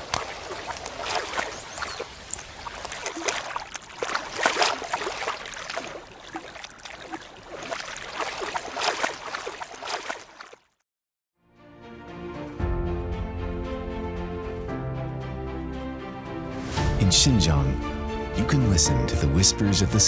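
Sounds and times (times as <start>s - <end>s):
trickling stream water: 0.0s - 10.8s.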